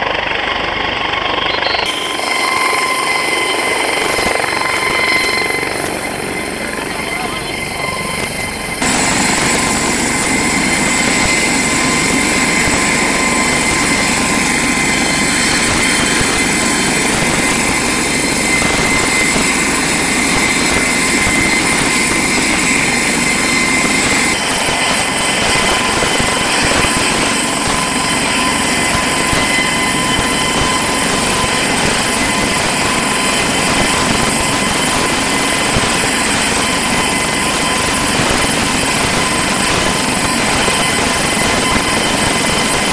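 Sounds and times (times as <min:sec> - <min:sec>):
helicopter rotor and engine: 0:00.0 - 0:42.9
high whine: 0:00.0 - 0:42.9.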